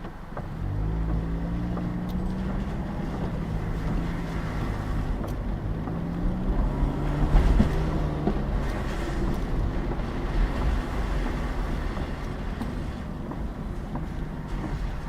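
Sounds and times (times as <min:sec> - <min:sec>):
car engine running: 0:00.0 - 0:15.0
wind rushing at microphone: 0:00.0 - 0:15.0.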